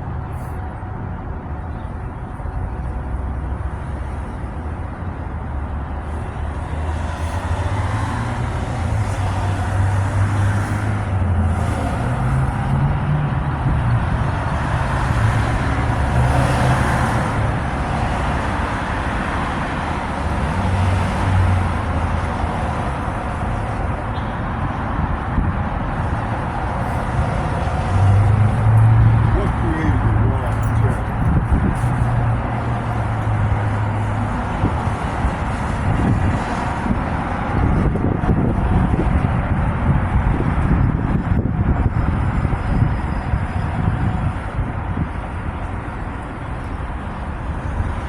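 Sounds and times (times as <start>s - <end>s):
vehicle engine and road noise: 0.0s - 48.0s.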